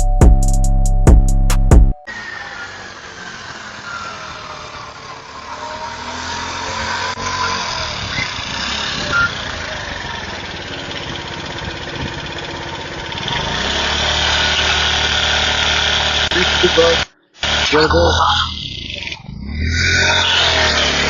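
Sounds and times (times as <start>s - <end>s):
vehicle engine running: 1.0s - 19.3s.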